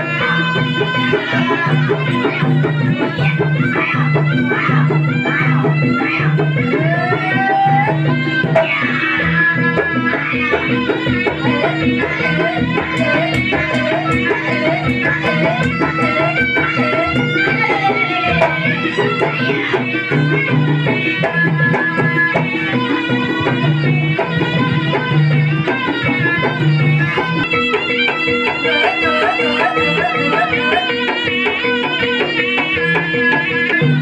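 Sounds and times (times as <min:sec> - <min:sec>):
hand drums: 0:00.0 - 0:34.0
wavering reed melody: 0:11.0 - 0:32.3.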